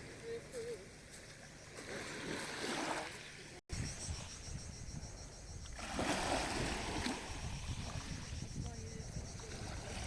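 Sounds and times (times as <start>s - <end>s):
sea waves washing ashore: 0.0s - 3.6s, 5.8s - 10.0s
wind buffeting microphone: 3.7s - 10.0s.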